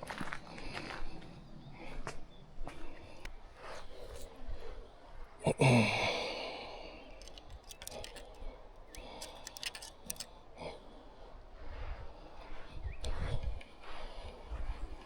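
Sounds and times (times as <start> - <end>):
person sighing: 5.5 - 6.6
small clicks and taps: 7.1 - 10.3.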